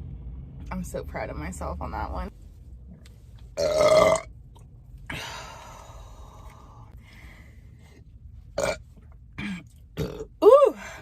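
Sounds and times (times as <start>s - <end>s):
woman belching: 3.6s - 4.3s, 8.6s - 8.8s, 9.4s - 10.7s.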